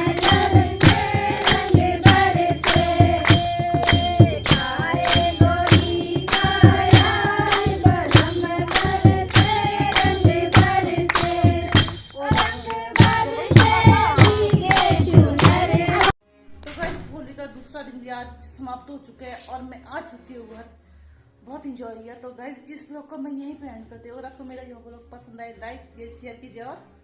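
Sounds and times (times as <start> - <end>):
folk singing: 0.0 - 16.2
sharp percussion beat: 0.0 - 16.2.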